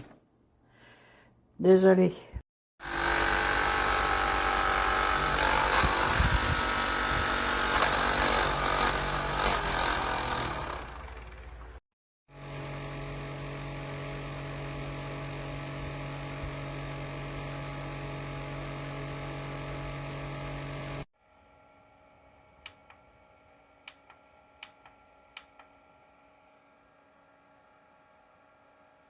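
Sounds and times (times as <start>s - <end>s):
fan motor humming: 2.9s - 11.8s.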